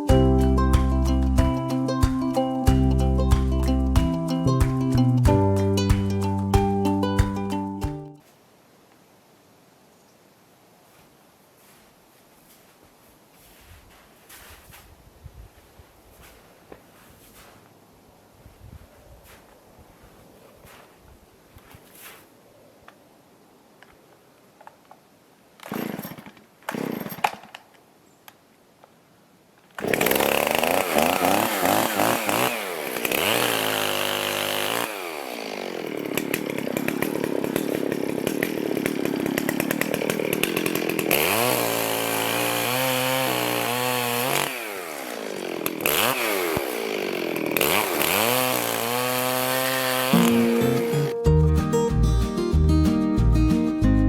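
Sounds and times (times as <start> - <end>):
chainsaw revving cutting wood: 25.6 - 27.3, 29.8 - 51.2.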